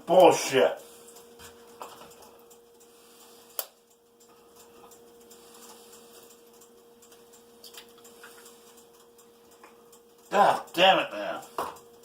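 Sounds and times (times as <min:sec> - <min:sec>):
steady low hum: 0:00.0 - 0:12.0
light ticks and scrapes: 0:00.8 - 0:10.0.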